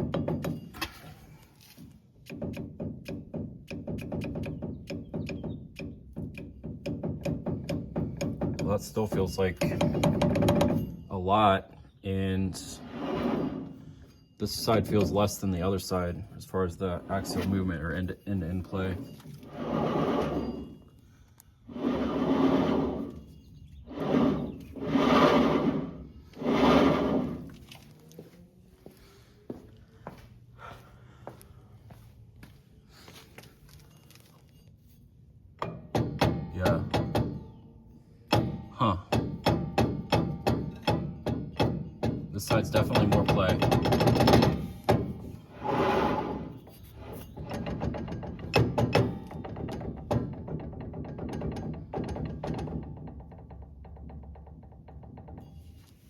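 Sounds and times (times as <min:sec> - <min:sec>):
metal axle rubbing and scraping: 0:00.0 - 0:28.0, 0:33.1 - 0:56.0
rapid metallic knocking: 0:38.3 - 0:45.2.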